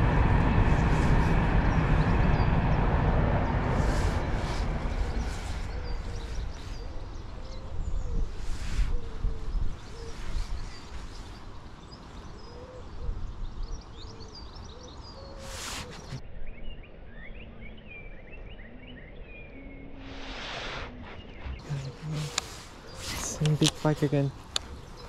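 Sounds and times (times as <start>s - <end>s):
wind rumble: 0.0s - 14.6s, 19.8s - 25.0s
birds chirping: 1.6s - 25.0s
low hooting bird notes: 17.2s - 25.0s.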